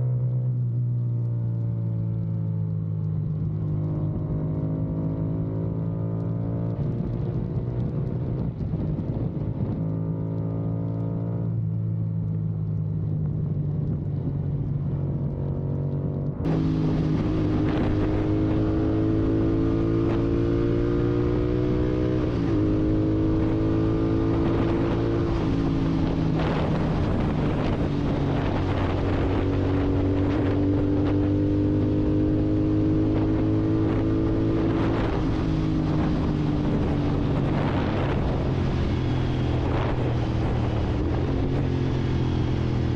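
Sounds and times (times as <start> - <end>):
motorcycle engine revving: 15.3 - 42.9.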